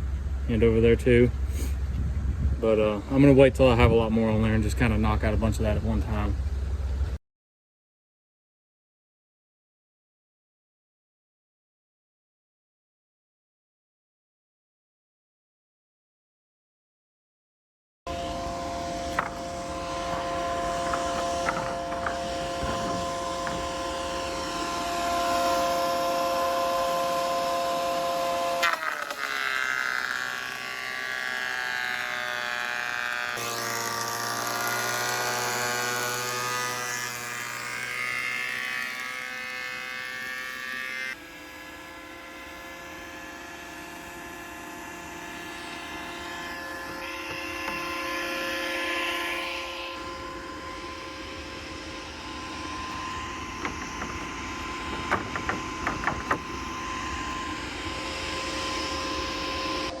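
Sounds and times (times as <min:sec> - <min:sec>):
machine motor running: 0:18.1 - 0:48.1, 0:49.9 - 1:00.0.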